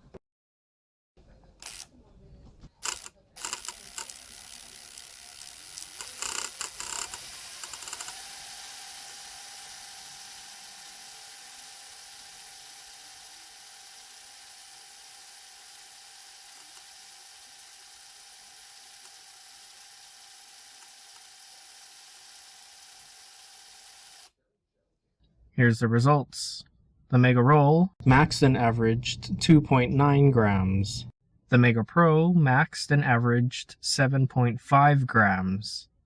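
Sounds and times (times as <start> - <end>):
ratchet clicking buzz: 1.6 - 1.9, 2.8 - 24.3
drill motor whine: 2.8 - 24.3.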